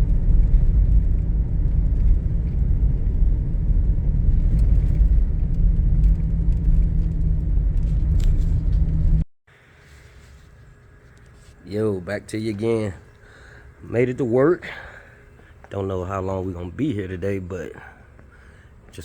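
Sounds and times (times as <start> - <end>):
car engine and road noise: 0.0 - 9.2.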